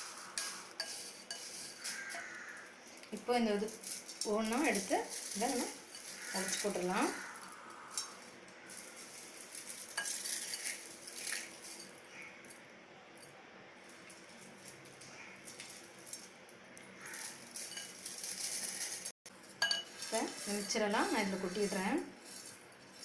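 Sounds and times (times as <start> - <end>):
crisp snacks crackling in a bowl: 0.0 - 23.0.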